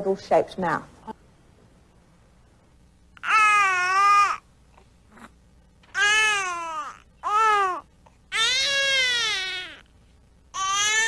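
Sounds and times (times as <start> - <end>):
newborn baby crying: 3.2 - 4.5, 5.9 - 9.9, 10.5 - 11.0.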